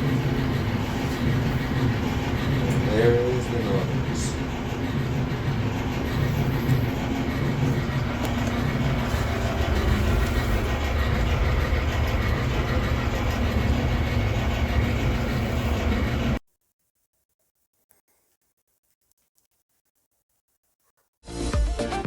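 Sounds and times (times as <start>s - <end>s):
clothes dryer drum rumbling: 0.0s - 16.4s.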